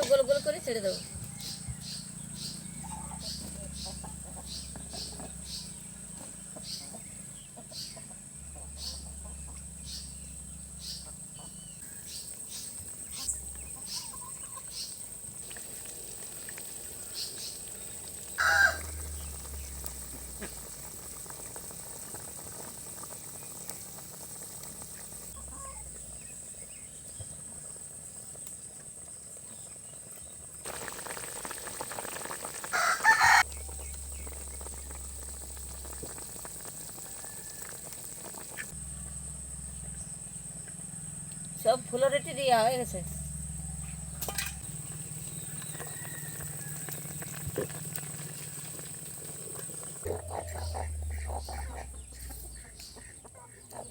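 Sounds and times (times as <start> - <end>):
rooster crowing: 18.3 - 19.7, 32.6 - 33.8, 36.6 - 38.4, 44.7 - 47.5.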